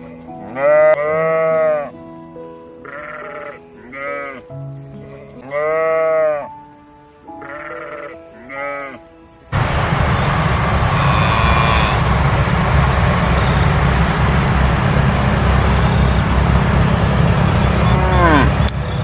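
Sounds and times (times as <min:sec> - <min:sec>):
soft background music: 0:00.0 - 0:09.6
sheep bleating: 0:00.4 - 0:02.0, 0:02.8 - 0:04.5, 0:05.4 - 0:06.6, 0:07.3 - 0:09.2, 0:10.9 - 0:12.1, 0:17.8 - 0:18.7
loud rushing noise: 0:09.5 - 0:19.0.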